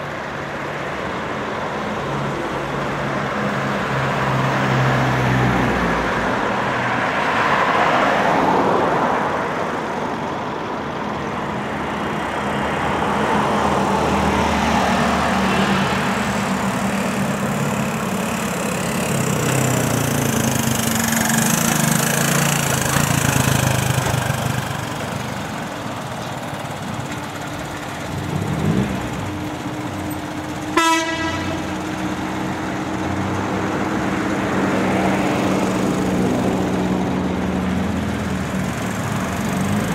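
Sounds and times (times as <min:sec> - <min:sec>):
motorcycle engine running: 0:15.9 - 0:25.2.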